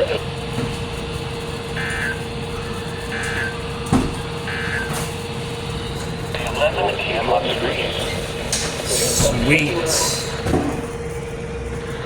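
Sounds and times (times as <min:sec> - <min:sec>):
steady low hum: 0:00.0 - 0:12.0
warbling data bursts: 0:00.0 - 0:12.0.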